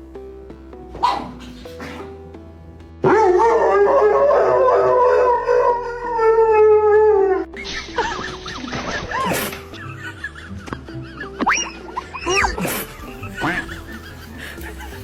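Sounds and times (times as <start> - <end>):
background music: 0.0 - 15.0
dog howling: 3.0 - 7.5.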